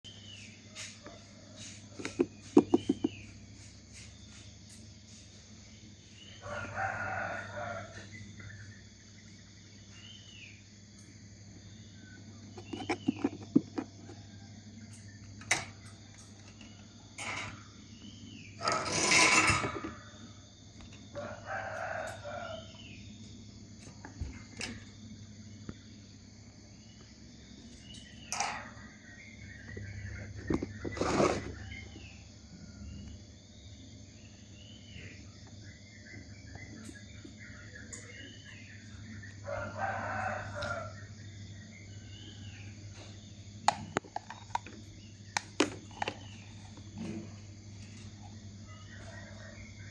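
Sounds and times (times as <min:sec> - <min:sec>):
small birds chirping: 0:00.0 - 0:13.8
low electric hum: 0:03.0 - 0:49.9
roosters crowing: 0:06.0 - 0:09.6, 0:18.4 - 0:25.6, 0:27.8 - 0:33.2, 0:36.7 - 0:43.6, 0:44.3 - 0:49.9.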